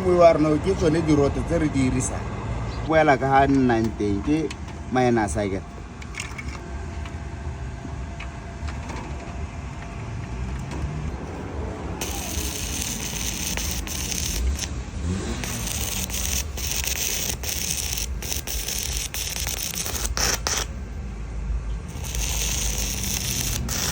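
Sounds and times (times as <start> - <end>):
welding arc crackling and hissing: 12.0 - 20.8, 21.9 - 23.9.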